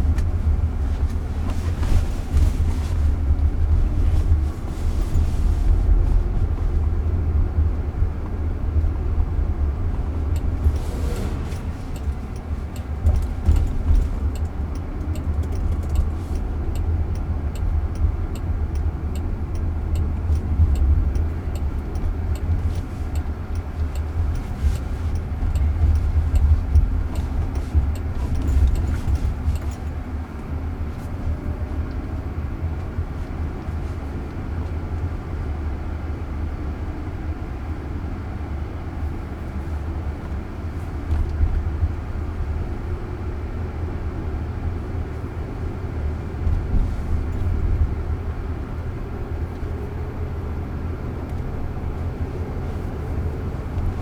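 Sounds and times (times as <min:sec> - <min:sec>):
road and tyre rumble in car: 0:00.0 - 0:54.0
faint regular ticking: 0:09.8 - 0:30.0.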